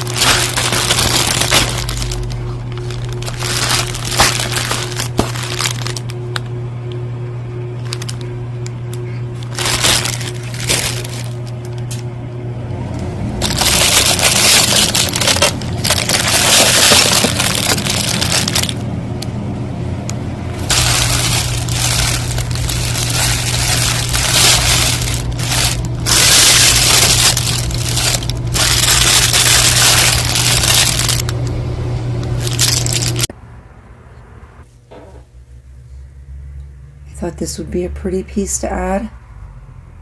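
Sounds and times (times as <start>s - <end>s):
jewelry and packaging rustling: 0.0s - 6.2s, 7.8s - 8.2s, 9.4s - 11.9s, 13.4s - 18.8s, 20.6s - 31.3s, 32.4s - 33.3s
steady low hum: 0.0s - 40.0s.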